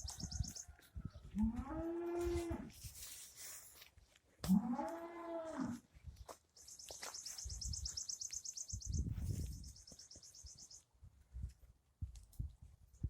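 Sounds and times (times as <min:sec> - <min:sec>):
cow mooing: 0:01.4 - 0:02.7, 0:04.4 - 0:05.8.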